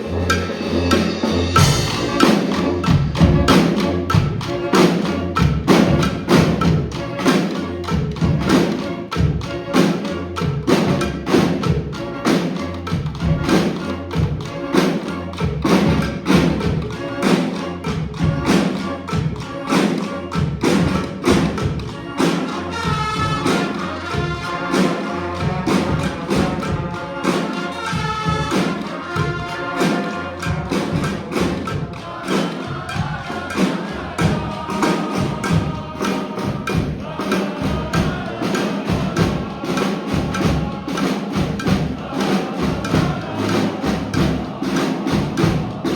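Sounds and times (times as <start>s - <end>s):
brass street band playing: 0.0s - 45.9s
held horn notes: 22.0s - 39.7s.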